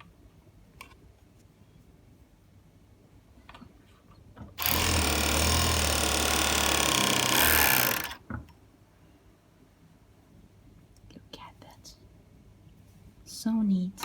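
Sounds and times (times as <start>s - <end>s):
overlock sewing machine running: 4.6s - 8.2s.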